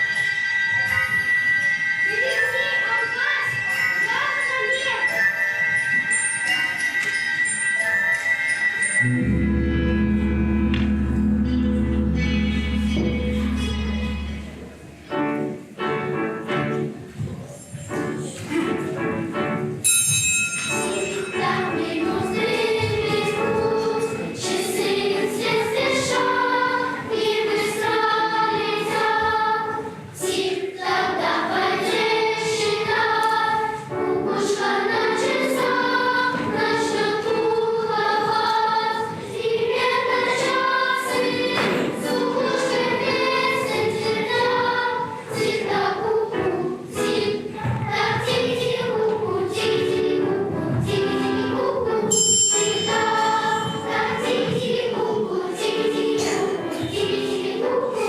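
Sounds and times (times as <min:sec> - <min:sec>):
musical accompaniment: 0:05.1 - 0:17.2, 0:17.9 - 0:19.9, 0:20.7 - 0:58.0
choir singing: 0:09.0 - 0:14.8, 0:21.1 - 0:58.0.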